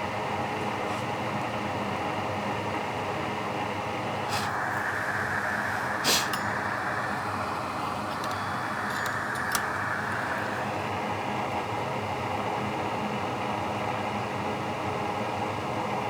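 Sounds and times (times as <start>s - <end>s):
hiss of blowing air: 4.2s - 6.4s.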